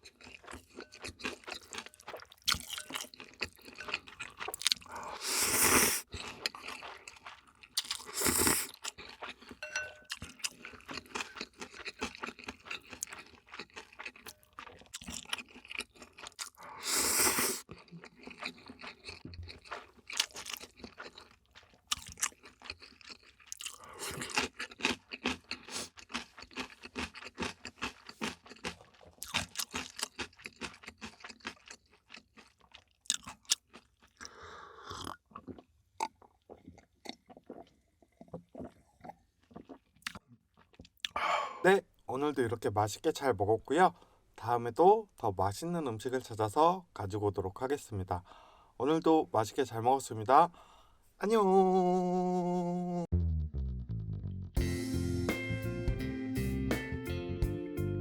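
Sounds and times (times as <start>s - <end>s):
crunchy chewing: 0.0s - 41.2s
drawn-out slurps: 4.8s - 7.2s, 8.0s - 8.8s, 16.5s - 17.7s.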